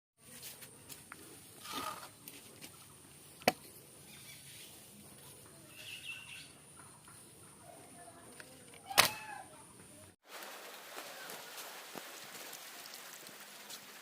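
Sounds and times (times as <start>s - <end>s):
faint chirps: 4.0s - 8.6s
faint steady high hiss: 8.2s - 14.0s.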